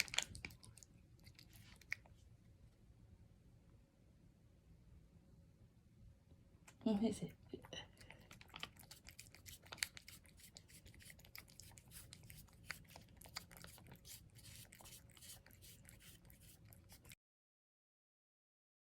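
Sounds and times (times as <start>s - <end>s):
cat licking wet clicks: 7.7s - 17.2s.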